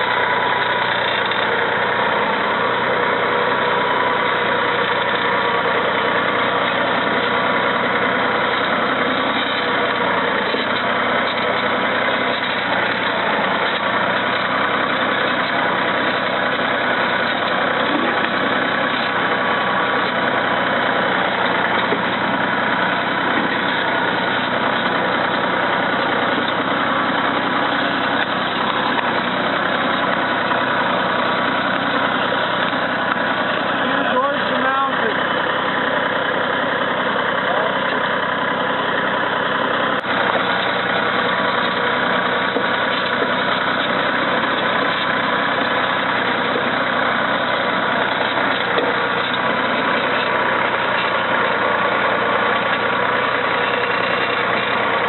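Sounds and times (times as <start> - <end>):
tractor engine running: 0.0 - 55.0.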